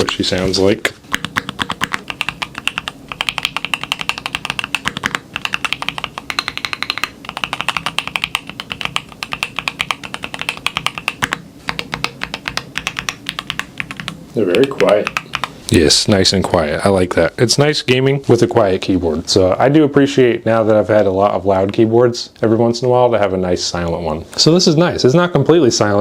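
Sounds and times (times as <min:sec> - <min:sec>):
quiet keyboard typing: 0:00.0 - 0:15.7.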